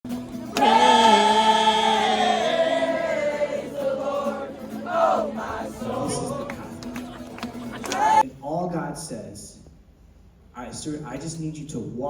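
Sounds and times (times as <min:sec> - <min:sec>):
group of voices singing: 0:00.5 - 0:08.2.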